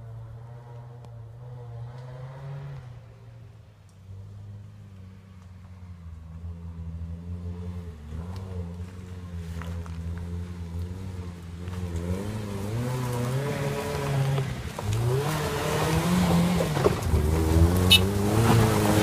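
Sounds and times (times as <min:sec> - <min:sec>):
car engine revving: 0:04.1 - 0:19.0.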